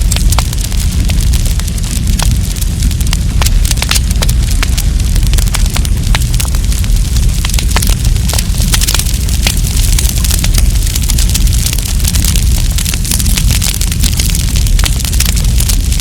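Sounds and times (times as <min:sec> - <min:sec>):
campfire crackling and popping: 0:00.0 - 0:16.0
low rumble of burning fire: 0:00.0 - 0:16.0.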